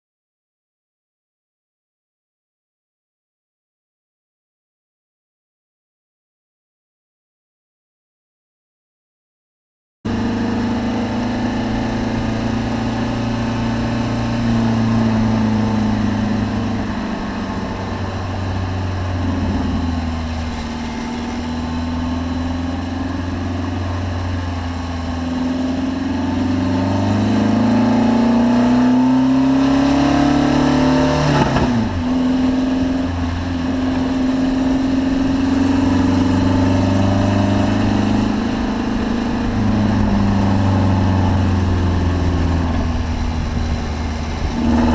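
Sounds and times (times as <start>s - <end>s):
car engine running: 10.1s - 28.6s, 31.4s - 44.9s.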